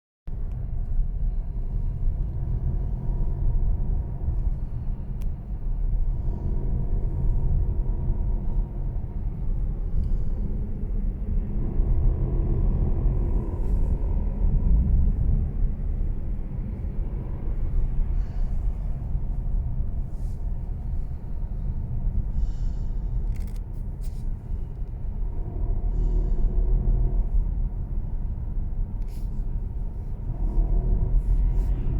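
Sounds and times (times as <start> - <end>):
low rumble: 0.3 - 31.9
rattles and sharp clicks: 23.2 - 23.8.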